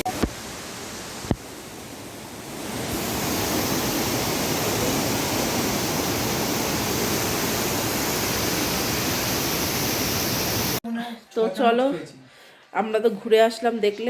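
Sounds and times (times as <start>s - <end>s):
waterfall roaring: 0.0s - 10.8s.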